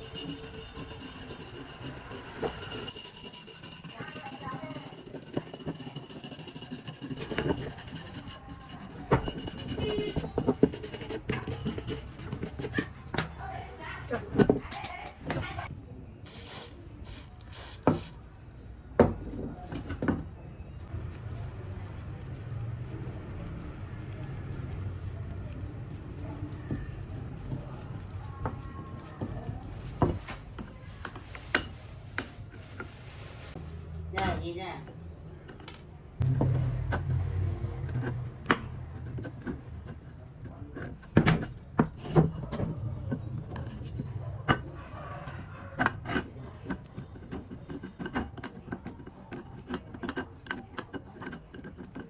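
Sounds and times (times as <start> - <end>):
scraping strokes: 0.0 - 13.0, 20.8 - 34.0.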